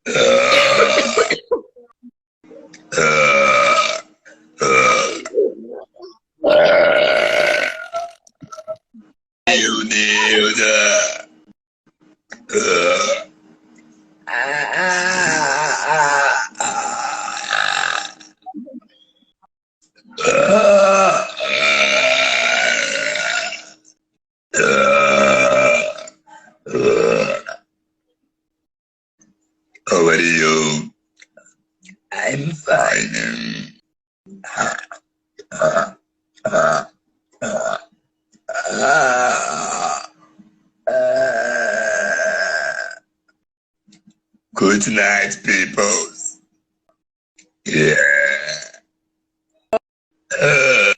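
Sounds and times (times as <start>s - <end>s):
woman belching: 0.1s - 1.7s, 2.9s - 4.0s, 4.6s - 8.8s, 9.5s - 11.3s, 14.3s - 18.4s, 20.2s - 23.8s, 24.6s - 27.6s, 34.3s - 37.9s, 38.5s - 40.2s, 40.9s - 43.1s, 47.7s - 48.9s, 50.3s - 50.9s.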